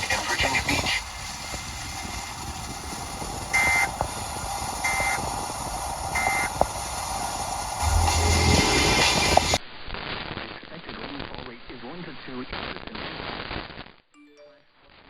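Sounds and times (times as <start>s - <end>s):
steady hiss: 0.0s - 13.8s
buzzy digital bursts: 6.0s - 9.6s.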